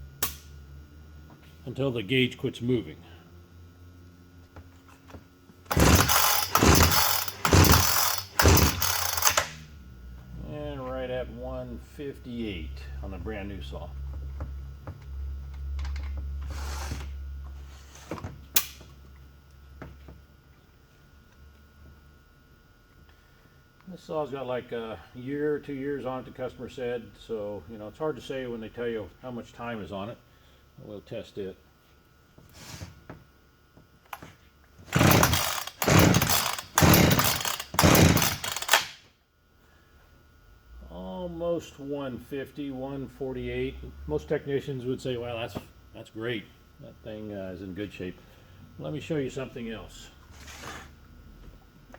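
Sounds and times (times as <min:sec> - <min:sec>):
chainsaw starter rope pulled: 0:05.7 - 0:09.6, 0:34.9 - 0:39.0
engine cranking without firing: 0:05.7 - 0:09.6, 0:34.9 - 0:39.0.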